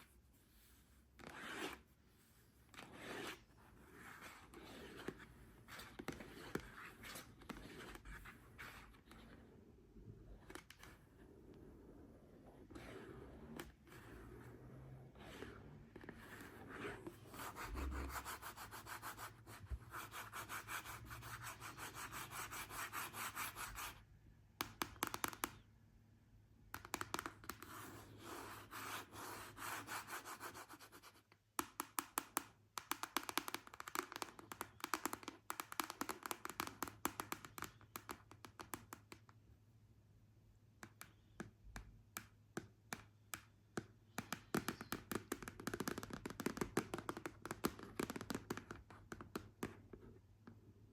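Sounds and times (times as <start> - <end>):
fingernails scratching a surface: 1.2 - 1.8, 2.8 - 9.5.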